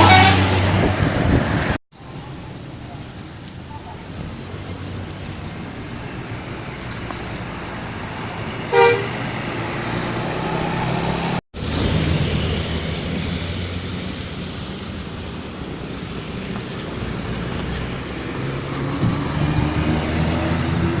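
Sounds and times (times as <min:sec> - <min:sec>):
horn toot: 0:00.0 - 0:00.6, 0:08.7 - 0:09.3
bus engines running: 0:00.0 - 0:21.0
heavy road traffic: 0:00.0 - 0:21.0.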